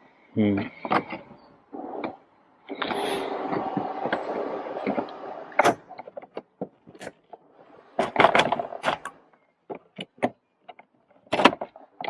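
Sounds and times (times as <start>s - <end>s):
plastic rubbing: 0.6s - 12.0s
plastic clicks and knocks: 8.0s - 12.0s.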